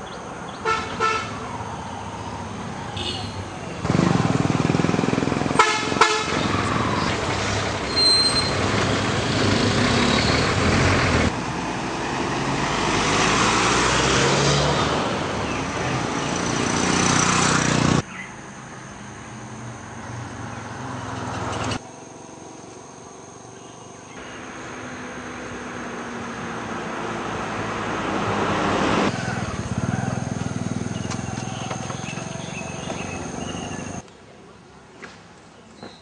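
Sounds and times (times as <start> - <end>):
vehicle horn toot: 0.7 - 1.4, 3.0 - 3.4, 5.6 - 6.5
loud outdoor rushing noise: 3.7 - 8.0.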